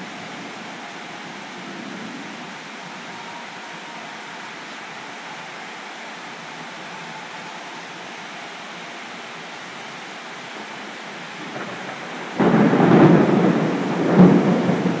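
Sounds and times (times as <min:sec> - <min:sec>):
steady rain: 0:00.0 - 0:15.0
rolling thunder clap: 0:11.6 - 0:15.0.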